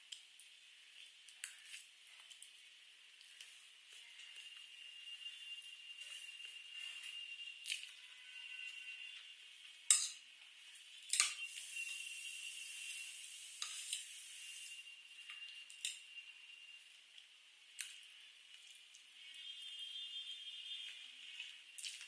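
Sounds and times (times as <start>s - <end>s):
utensils clicking against dish: 9.9s - 10.2s, 11.1s - 11.5s
wet chewing and slurping: 21.2s - 22.0s.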